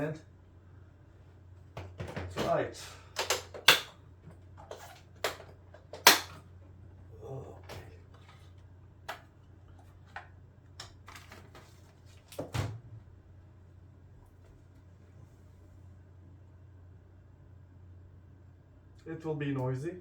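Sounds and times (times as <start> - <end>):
plastic parts clicking and knocking: 3.2 - 4.0, 4.6 - 6.4.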